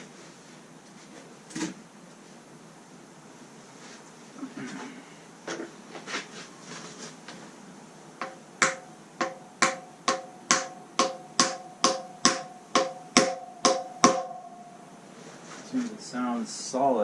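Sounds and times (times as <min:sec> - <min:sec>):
hammer striking metal bearing: 0:08.2 - 0:14.7.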